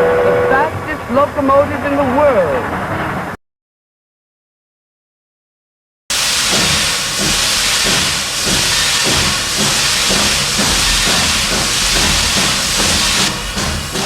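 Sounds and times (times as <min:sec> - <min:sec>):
steam locomotive hissing: 0:06.1 - 0:14.0
low uneven pulsing: 0:06.2 - 0:14.0.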